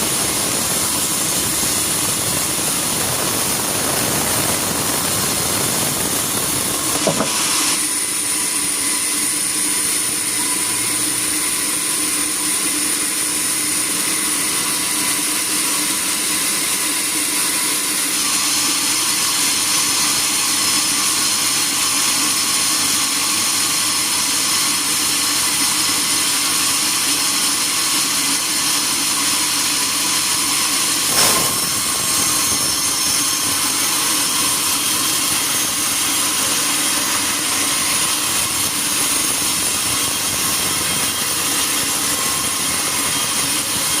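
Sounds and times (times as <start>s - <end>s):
sawmill machinery whining: 0.0s - 44.0s
sharp knock: 6.8s - 7.6s, 31.1s - 32.5s
higher machine whine: 31.0s - 41.5s.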